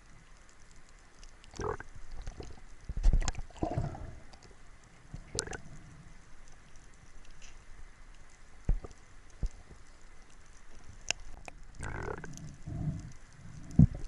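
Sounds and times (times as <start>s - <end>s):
water sloshing and splashing: 1.3s - 5.8s.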